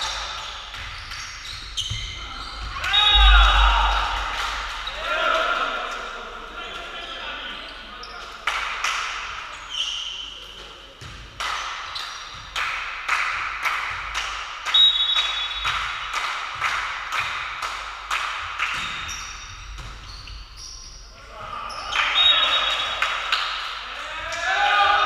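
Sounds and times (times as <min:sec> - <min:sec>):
shoes squeaking: 0:00.5 - 0:03.3, 0:18.9 - 0:22.2
volleyballs struck and bouncing: 0:10.4 - 0:21.1.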